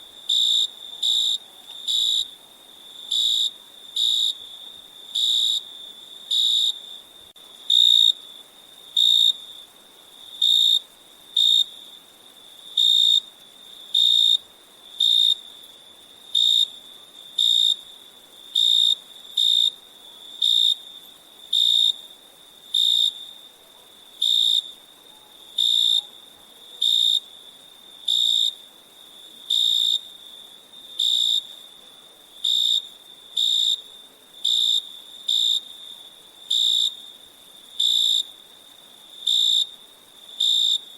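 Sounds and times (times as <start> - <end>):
crickets chirping: 0.0 - 40.9
faint high insect trill: 0.0 - 40.9.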